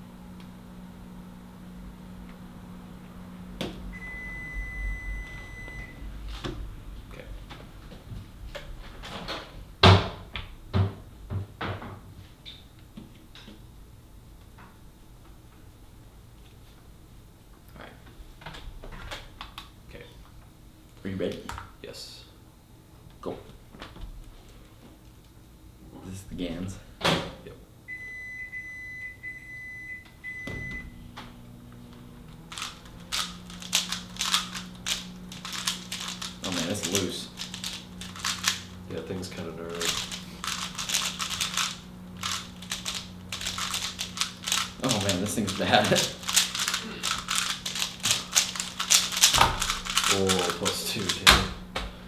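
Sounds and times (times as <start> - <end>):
plastic clicks of speed cube turning: 32.5 - 38.7, 39.8 - 51.2.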